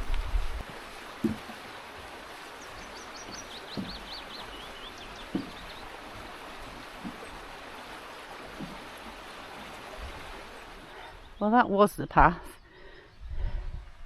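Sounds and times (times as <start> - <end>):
soft thuds: 0.0 - 1.6, 3.3 - 4.1, 5.2 - 5.8
stream rushing: 0.0 - 11.4
songbird singing: 1.2 - 8.8, 10.4 - 13.8.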